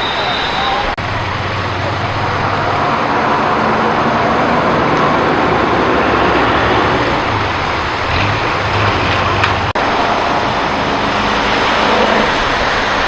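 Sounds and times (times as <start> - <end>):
road traffic noise: 0.0 - 13.0.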